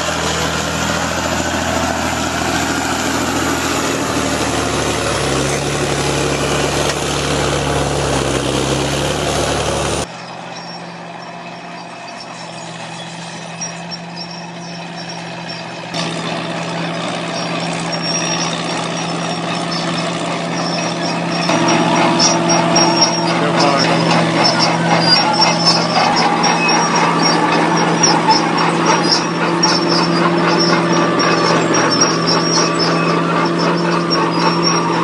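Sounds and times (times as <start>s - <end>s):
bulldozer diesel engine running: 0.0s - 35.0s
quieter engine note: 15.9s - 35.0s.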